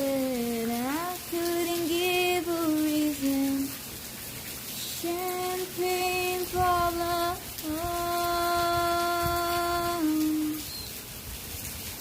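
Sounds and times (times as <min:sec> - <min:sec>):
person singing unaccompanied: 0:00.0 - 0:03.8, 0:04.9 - 0:10.7
rain pattering: 0:00.0 - 0:12.0.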